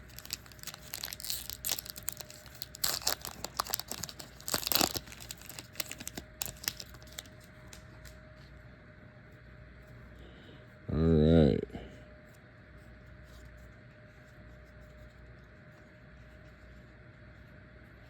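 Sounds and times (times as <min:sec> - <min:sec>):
wrapper tearing and crinkling: 0:00.0 - 0:08.2.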